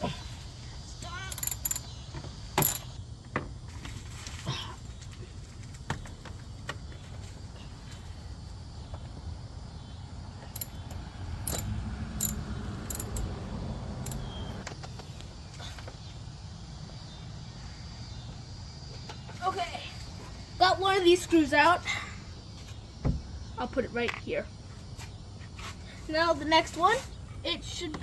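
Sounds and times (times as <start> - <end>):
hand tool metallic clicks: 1.3 - 1.8, 2.6 - 2.9, 10.6 - 13.3, 14.0 - 14.2.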